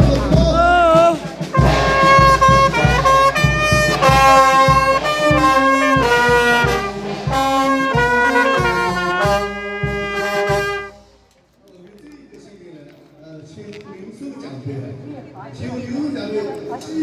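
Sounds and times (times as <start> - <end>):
brass-like wind melody: 0.0 - 11.2
steady drum beat: 0.0 - 11.2.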